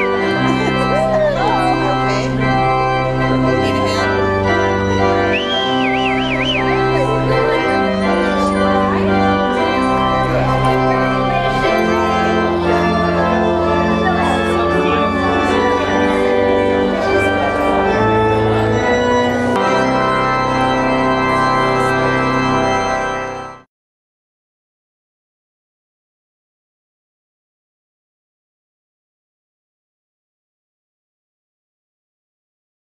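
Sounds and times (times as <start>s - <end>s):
organ playing held chords: 0.0s - 23.7s.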